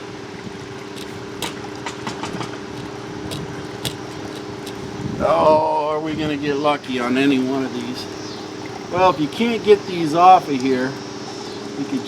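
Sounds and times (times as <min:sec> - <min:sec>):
sharp metal clicks: 0:00.9 - 0:05.0.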